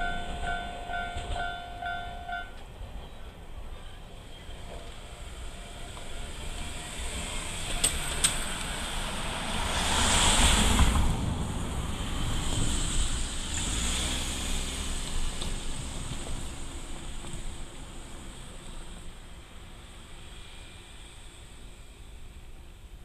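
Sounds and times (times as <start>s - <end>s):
vehicles clacking over crossing: 0.0s - 2.7s, 4.6s - 19.9s
traffic rushing past: 4.4s - 22.9s.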